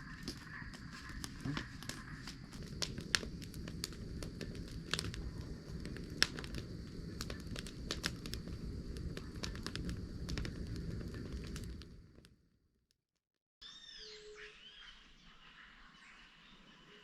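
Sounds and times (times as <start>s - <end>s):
campfire crackling and popping: 0.0s - 12.4s.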